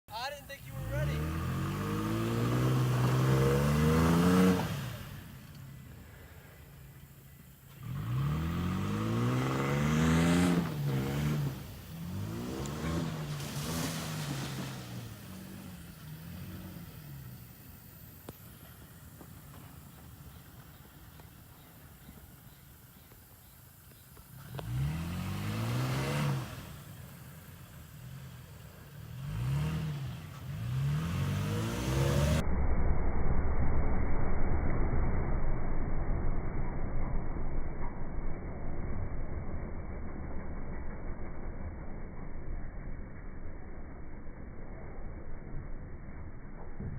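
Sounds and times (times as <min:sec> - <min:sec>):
pickup engine revving: 0:00.6 - 0:06.2, 0:07.2 - 0:21.2, 0:24.2 - 0:32.7.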